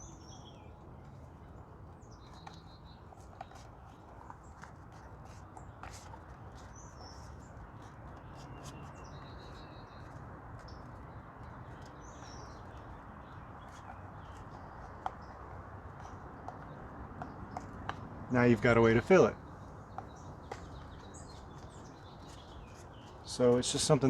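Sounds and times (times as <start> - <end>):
birds chirping faintly: 0.0 - 24.0.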